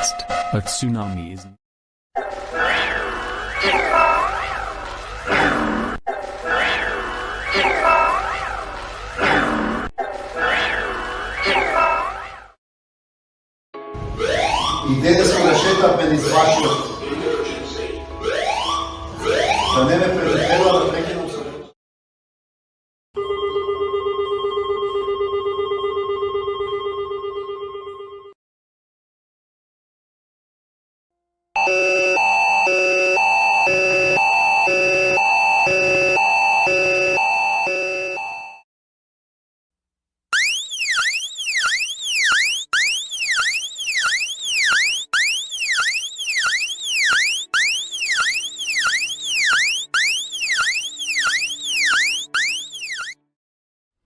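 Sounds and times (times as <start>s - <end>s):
electronic alert siren: 14.0s - 17.0s, 18.2s - 21.1s, 31.6s - 38.6s, 40.3s - 53.2s
pulsing alarm trill: 14.2s - 17.0s, 18.2s - 20.9s, 31.6s - 38.6s, 40.4s - 53.2s.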